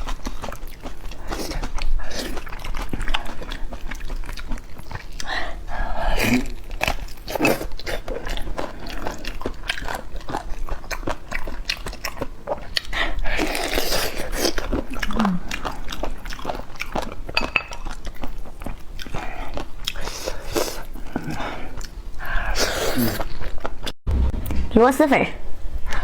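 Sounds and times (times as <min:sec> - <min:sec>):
biting and chewing with crunching: 0:00.0 - 0:05.3.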